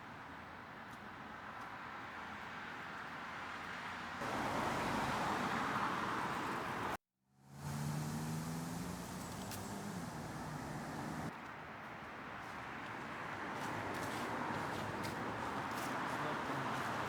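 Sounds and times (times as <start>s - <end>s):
passing cars hiss: 4.2s - 11.3s.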